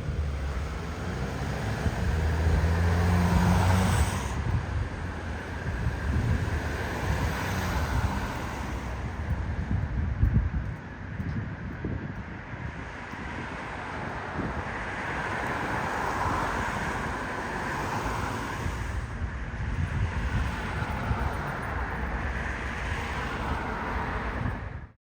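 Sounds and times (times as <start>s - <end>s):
street traffic rumble: 0.0s - 25.0s
wind buffeting microphone: 0.0s - 25.0s.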